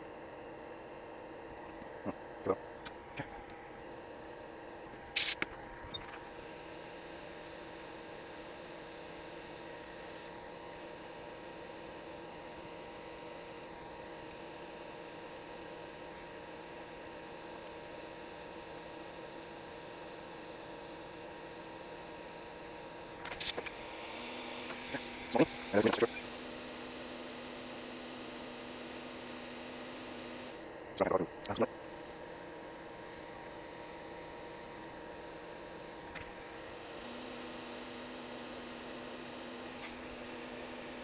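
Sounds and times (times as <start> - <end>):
electrical hum and hiss: 22.0 - 41.0.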